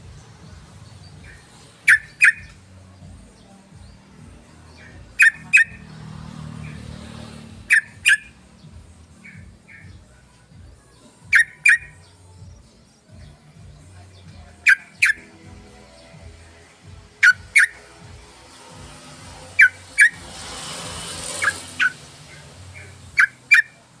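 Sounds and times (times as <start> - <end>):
bird calling sharp paired notes: 1.3 - 2.6, 5.1 - 5.8, 11.3 - 12.0, 14.6 - 15.3, 17.2 - 17.9.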